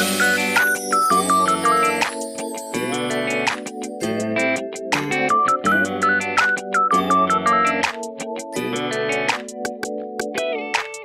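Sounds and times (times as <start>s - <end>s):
upbeat electronic music: 0.0s - 11.0s.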